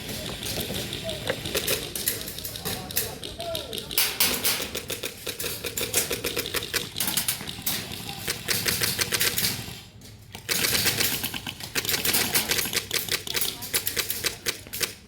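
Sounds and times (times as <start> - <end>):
airsoft guns firing in bursts: 3.7 - 9.8, 10.4 - 15.0.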